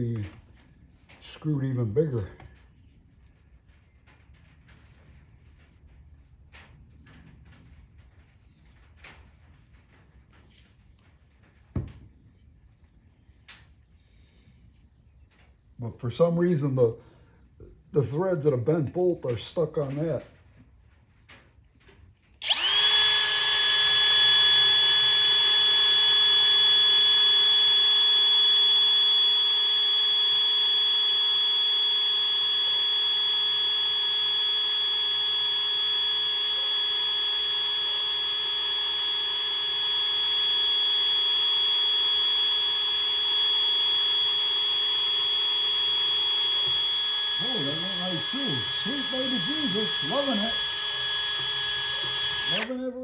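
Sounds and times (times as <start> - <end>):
electric drill boring into steel: 22.4 - 52.8.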